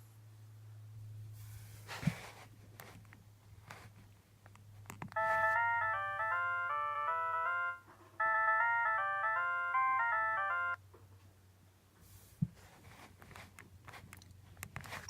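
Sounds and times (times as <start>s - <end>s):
polyphonic phone ringtone: 5.2s - 10.8s.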